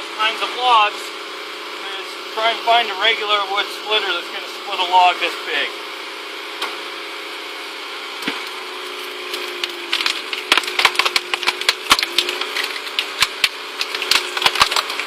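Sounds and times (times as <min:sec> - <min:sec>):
machine droning: 0:00.0 - 0:15.0
wood cracking and splintering: 0:08.2 - 0:15.0.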